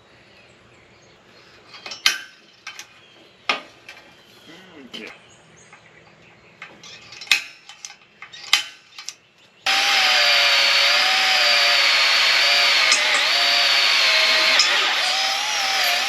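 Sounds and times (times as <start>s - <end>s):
steel parts clanking: 1.7s - 2.9s, 6.6s - 9.2s, 12.6s - 16.0s
power tool whining: 9.7s - 16.0s.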